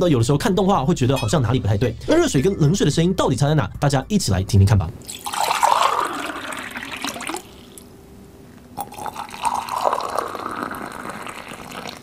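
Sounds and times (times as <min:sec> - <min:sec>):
hot water pouring: 0:05.0 - 0:07.8, 0:08.8 - 0:12.0
cold water pouring: 0:05.0 - 0:07.9, 0:08.8 - 0:12.0.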